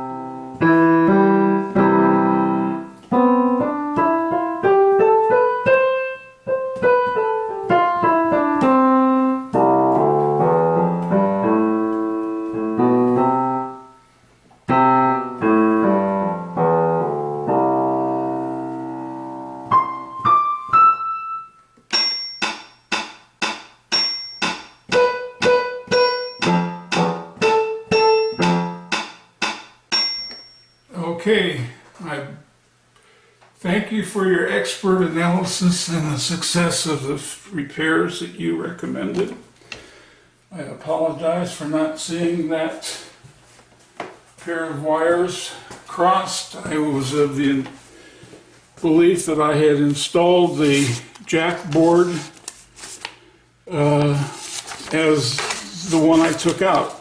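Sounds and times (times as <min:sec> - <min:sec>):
electronic keyboard playing: 0:00.0 - 0:14.0, 0:14.7 - 0:22.6, 0:23.4 - 0:30.2.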